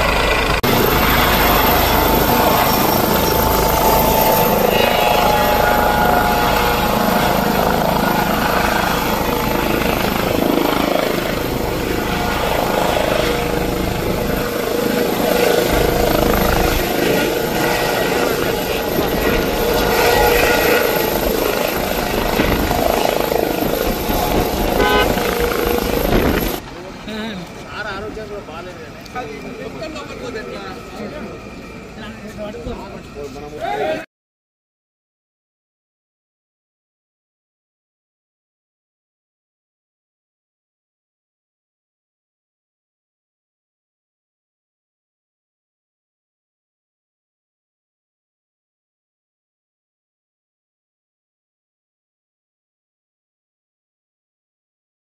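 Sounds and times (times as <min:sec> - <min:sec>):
helicopter rotor and engine: 0:00.0 - 0:33.9
voices: 0:00.2 - 0:34.1.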